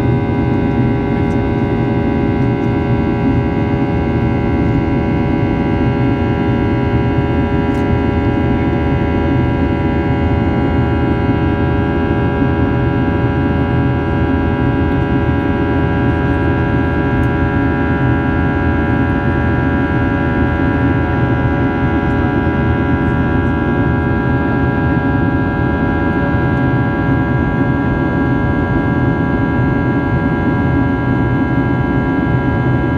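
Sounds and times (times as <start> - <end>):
jet engines heard from cabin: 0.0 - 32.9.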